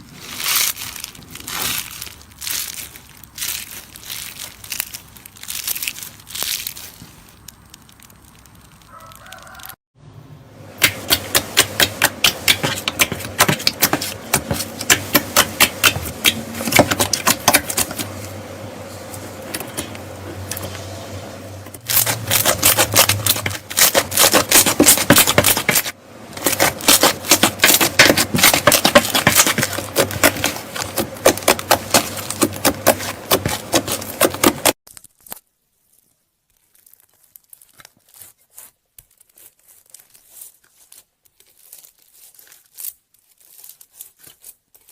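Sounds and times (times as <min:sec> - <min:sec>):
slime crackling and popping: 0:00.0 - 0:09.8, 0:21.8 - 0:44.9.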